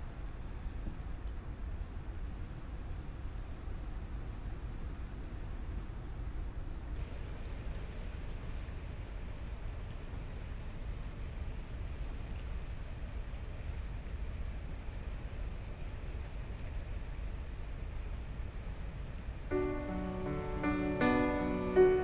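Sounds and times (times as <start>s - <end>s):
crickets chirping: 1.4s - 1.9s, 4.2s - 4.8s, 6.8s - 22.0s
rushing background noise: 7.0s - 22.0s.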